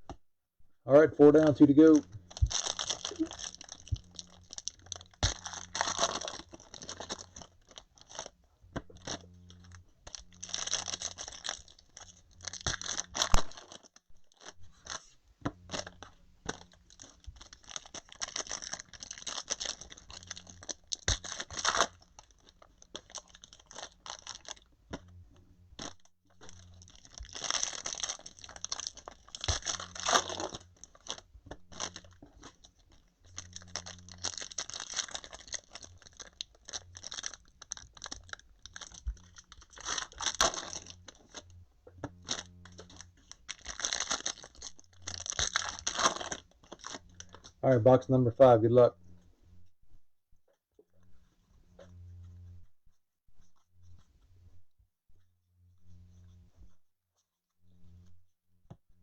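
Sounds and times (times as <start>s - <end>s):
packaging crinkling and tearing: 1.4s - 25.1s, 25.8s - 47.6s.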